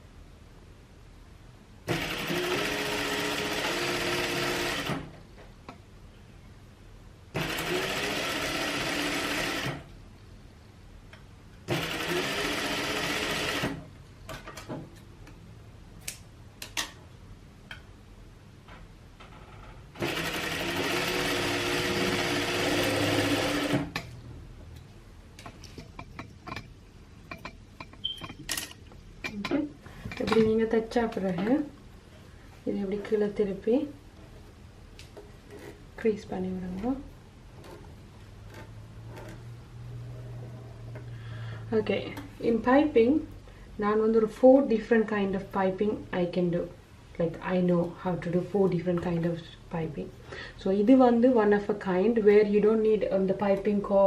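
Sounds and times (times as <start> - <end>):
sewing machine whirring: 1.9 - 5.1, 7.4 - 9.9, 11.7 - 13.9, 19.9 - 24.0.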